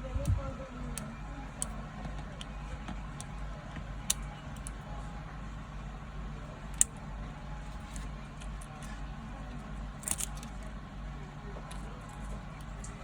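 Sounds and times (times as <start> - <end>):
steady low hum: 0.0 - 13.0
small tools clicking: 10.0 - 10.6.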